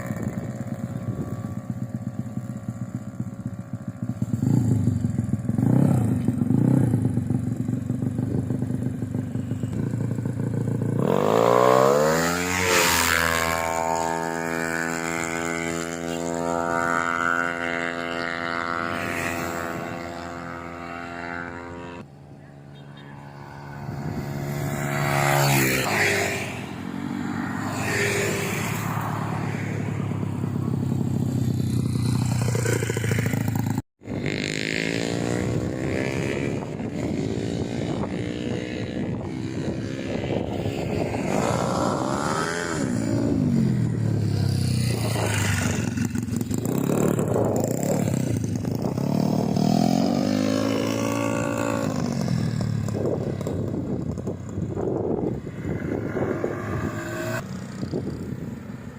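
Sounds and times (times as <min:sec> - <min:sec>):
scooter engine revving: 0:00.0 - 0:22.1.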